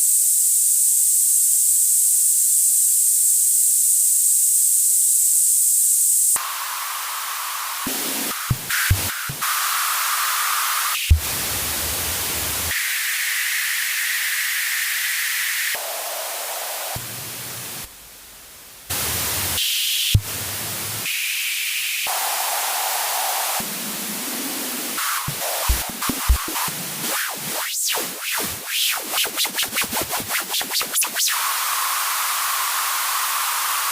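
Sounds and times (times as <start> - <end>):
television static hiss: 6.3 - 29.1, 31.3 - 33.9
short low thumps: 25.3 - 26.6.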